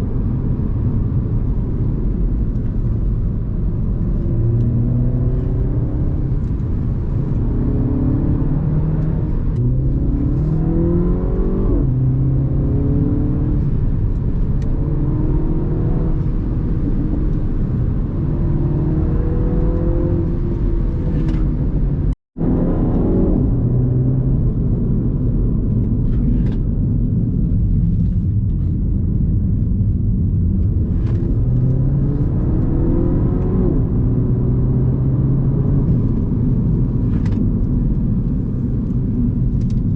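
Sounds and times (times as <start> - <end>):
road and tyre rumble: 0.0 - 39.9
car engine revving through gears: 3.7 - 25.0, 30.4 - 39.5.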